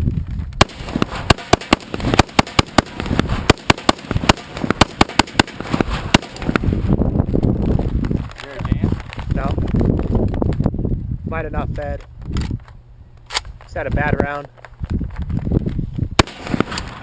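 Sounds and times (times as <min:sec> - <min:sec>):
rifle rapid gunshots: 0:00.6 - 0:06.6, 0:16.2 - 0:17.0.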